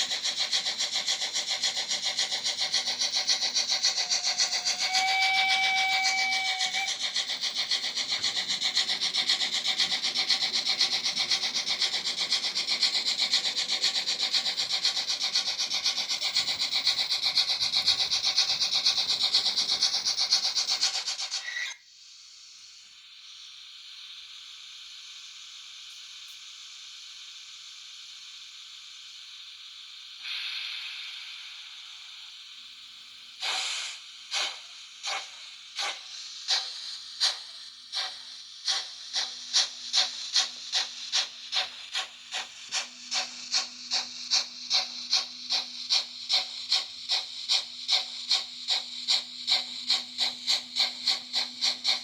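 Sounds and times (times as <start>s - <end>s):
steam locomotive chuffing: 0.0s - 21.7s, 29.4s - 52.0s
steam hiss: 0.0s - 52.0s
steam whistle: 3.8s - 7.4s.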